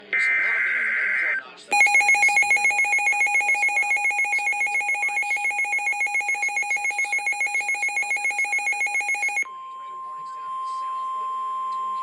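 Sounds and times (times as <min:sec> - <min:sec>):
electronic alert tone pulsing rapidly: 0:01.7 - 0:09.4.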